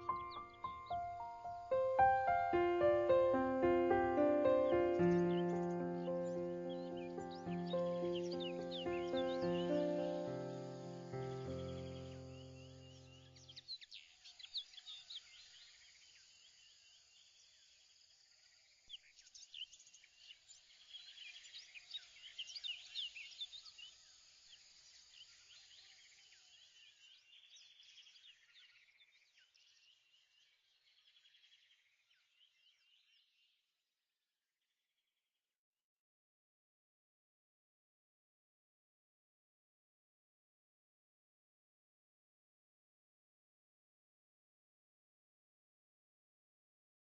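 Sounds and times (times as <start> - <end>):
birds chirping: 0.0 - 13.6
soft outdoor hiss: 0.0 - 28.8.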